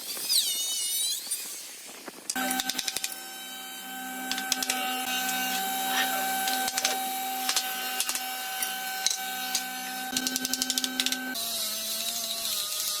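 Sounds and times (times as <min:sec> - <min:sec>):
small electric motor whining: 0:00.0 - 0:13.0
irregular clicks and taps: 0:10.2 - 0:11.2.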